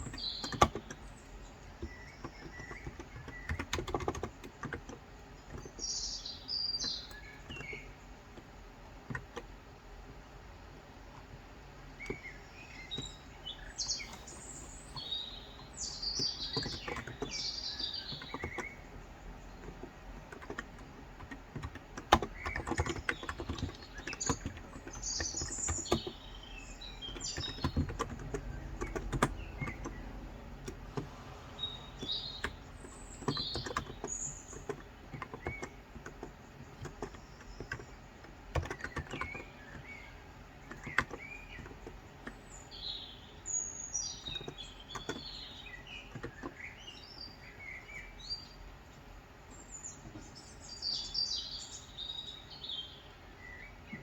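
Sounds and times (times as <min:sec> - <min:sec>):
soft keyboard keystrokes: 0:00.0 - 0:05.9, 0:12.0 - 0:42.4
birds chirping: 0:00.0 - 0:54.0.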